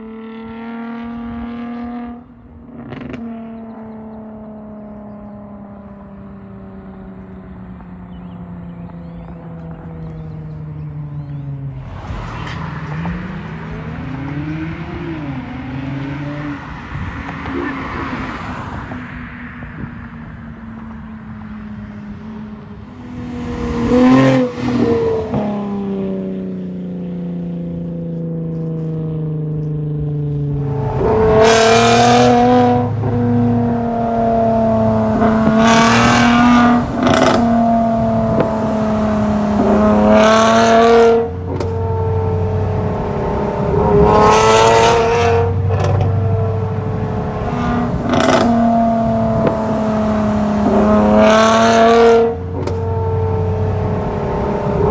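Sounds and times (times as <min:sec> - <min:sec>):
car engine revving: 0:00.0 - 0:54.9
exhaust pops and crackles: 0:08.7 - 0:18.3, 0:26.3 - 0:31.0, 0:34.6 - 0:40.6, 0:45.7 - 0:51.7, 0:52.5 - 0:52.9.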